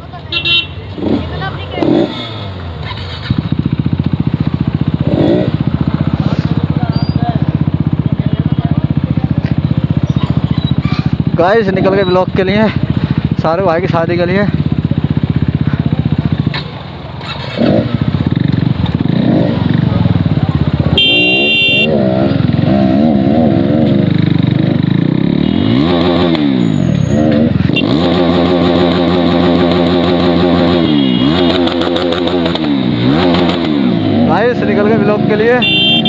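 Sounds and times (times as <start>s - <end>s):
motorcycle engine accelerating: 0.0s - 36.0s
vehicle horn beeping: 0.3s - 0.8s, 20.9s - 22.0s, 25.4s - 26.0s, 26.7s - 28.0s, 30.6s - 32.0s, 35.5s - 36.0s.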